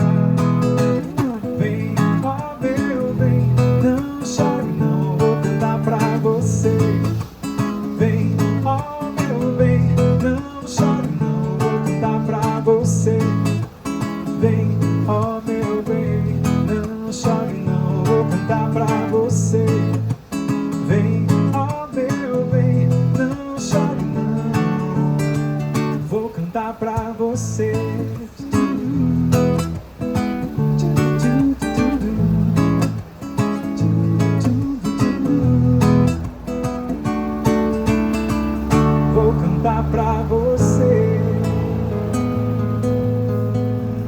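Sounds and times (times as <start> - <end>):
acoustic guitar strumming: 0.0 - 44.0
bass line: 33.8 - 44.0.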